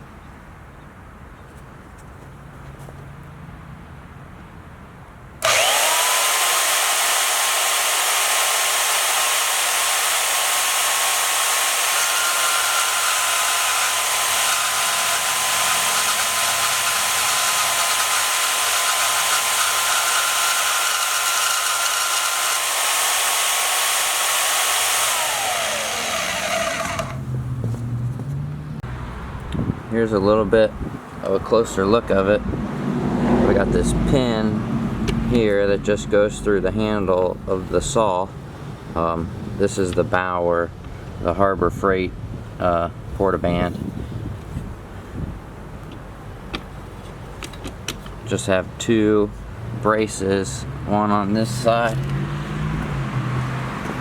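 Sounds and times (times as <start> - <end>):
band saw motor whining: 5.4 - 27.4.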